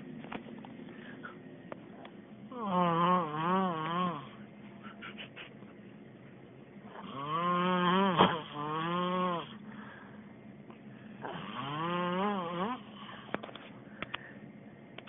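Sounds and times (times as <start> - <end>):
person snoring: 2.5 - 4.4, 6.9 - 9.6, 11.2 - 13.3.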